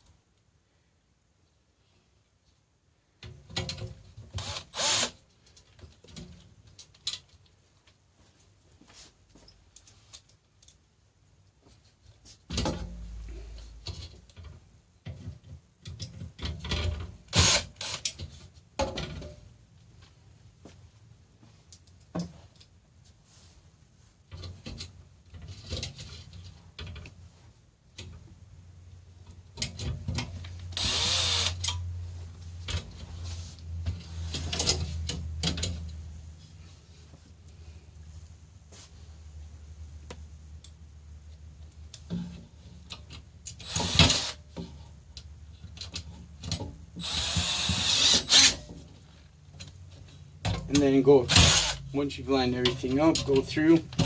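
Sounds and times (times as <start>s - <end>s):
power drill-driver running: 4.4s - 5.2s, 30.8s - 31.6s, 43.6s - 44.4s, 47.0s - 48.5s, 51.3s - 51.8s.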